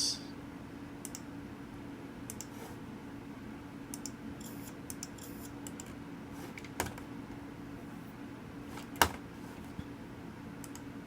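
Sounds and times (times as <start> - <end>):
steady low hum: 0.0 - 11.0
computer keyboard and mouse clicks: 1.0 - 1.2, 2.3 - 2.5, 10.6 - 10.9.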